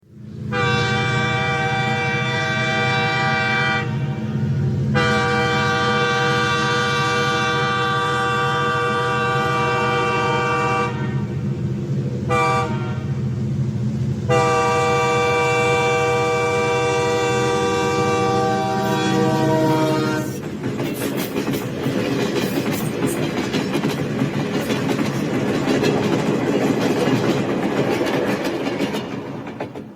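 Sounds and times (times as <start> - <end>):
train rumbling: 0.0 - 29.9
train horn blasts: 0.5 - 11.4, 12.3 - 13.2, 14.3 - 20.4.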